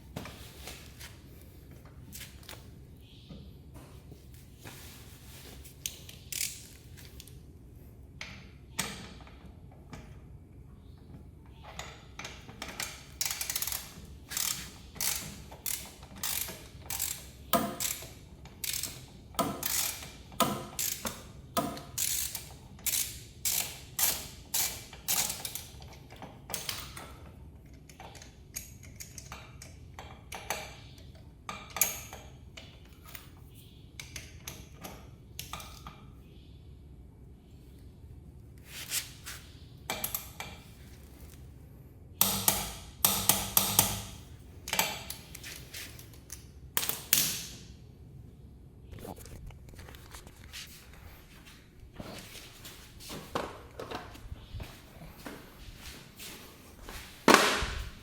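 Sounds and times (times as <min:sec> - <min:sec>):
ratchet wrench clicking: 0:06.1 - 0:06.8, 0:12.8 - 0:25.7.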